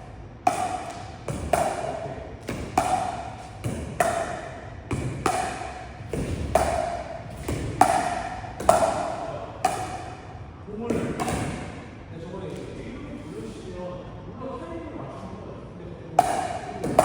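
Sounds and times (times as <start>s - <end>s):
paddles striking pickleball: 0.4s - 10.3s, 10.9s - 11.8s, 16.2s - 17.0s.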